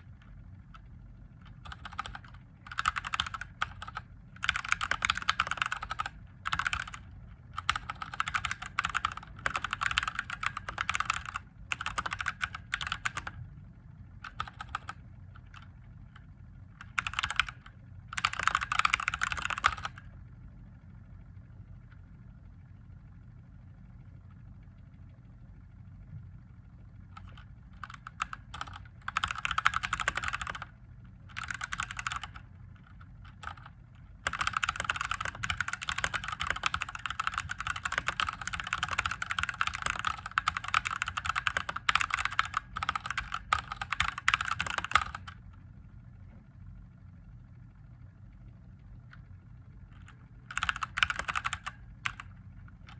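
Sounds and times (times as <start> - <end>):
mechanical keyboard typing: 0.0 - 13.4, 14.2 - 20.1, 27.1 - 30.7, 31.3 - 45.4, 49.9 - 52.9
faint low hum: 0.0 - 52.9.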